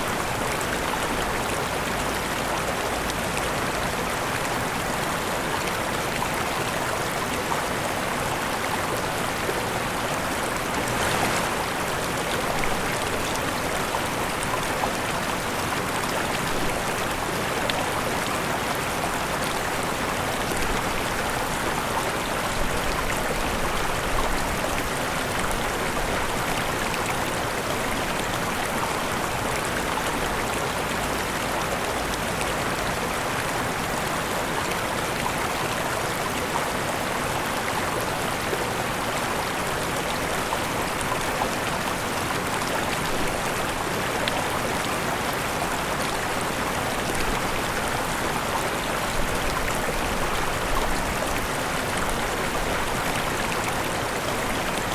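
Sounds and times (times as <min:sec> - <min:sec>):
waterfall rushing: 0:04.1 - 0:30.8.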